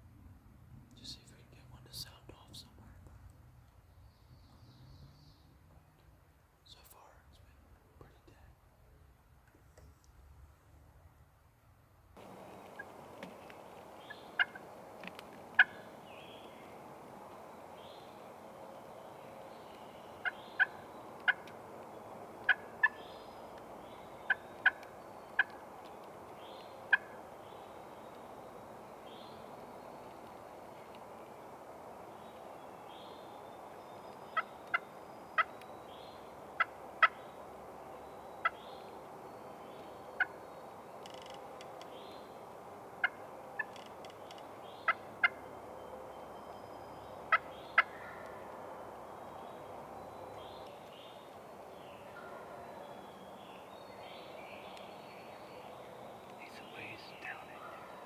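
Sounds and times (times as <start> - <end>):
steady background hiss: 0.9 - 3.1, 6.2 - 9.3, 12.0 - 58.0
faint bird chirps: 12.2 - 58.0
wild turkey calling: 12.2 - 58.0.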